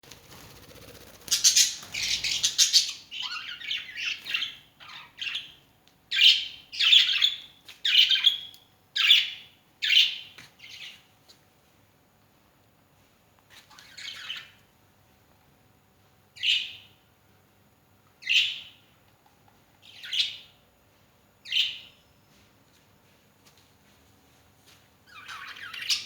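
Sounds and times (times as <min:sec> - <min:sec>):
birds squawking: 0:01.3 - 0:05.4.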